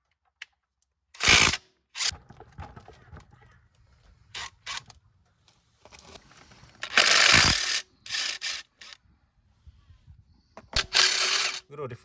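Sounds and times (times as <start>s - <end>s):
drill ratcheting rattle: 1.2s - 2.1s, 4.4s - 4.8s, 6.8s - 9.0s, 10.8s - 11.6s.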